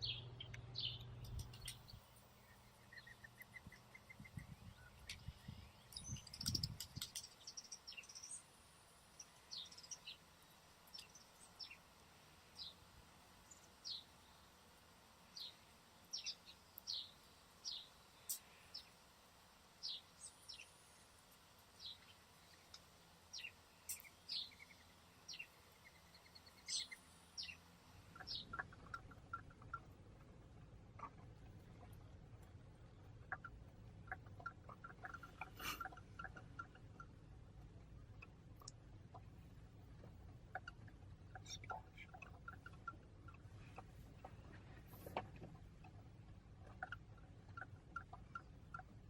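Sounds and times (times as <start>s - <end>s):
small songbird chirping: 0.0s - 29.8s, 40.5s - 45.2s.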